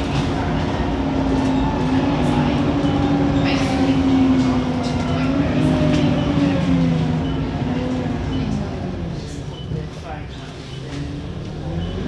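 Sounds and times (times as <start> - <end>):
bus engine drone: 0.0 - 12.0.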